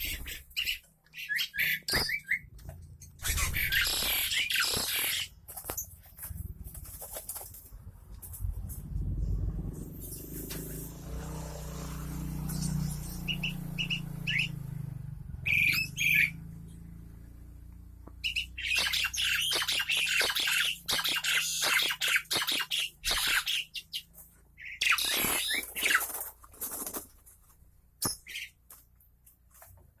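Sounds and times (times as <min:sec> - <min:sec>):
birds chirping: 0:00.0 - 0:06.1, 0:09.7 - 0:17.2, 0:18.0 - 0:26.3, 0:28.0 - 0:28.7
wings flapping and scuffling: 0:00.0 - 0:13.9, 0:18.0 - 0:30.0.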